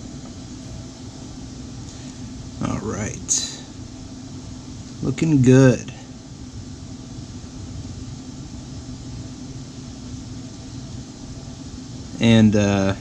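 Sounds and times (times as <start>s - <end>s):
background hum and hiss: 0.0s - 13.0s.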